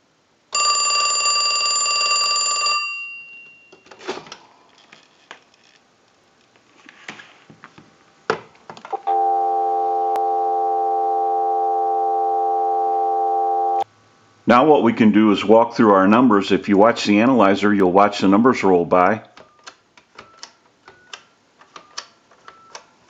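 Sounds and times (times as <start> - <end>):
telephone bell ringing: 0.6 - 3.8, 9.0 - 13.8
telephone dial tone: 8.9 - 13.8.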